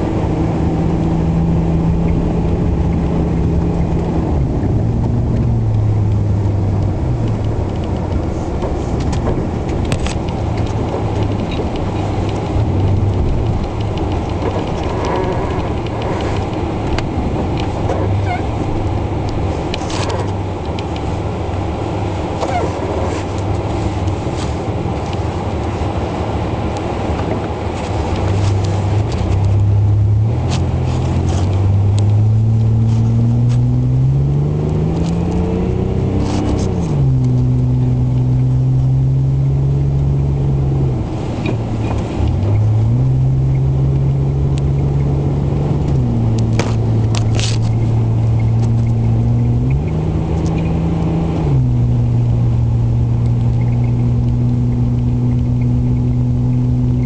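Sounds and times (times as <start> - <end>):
steady rushing noise: 0.0 - 33.6
vehicle engine revving: 0.0 - 57.0.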